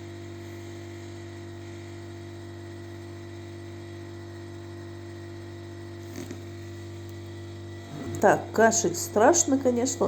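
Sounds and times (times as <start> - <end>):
low hum of fixed tones: 6.6 - 10.0.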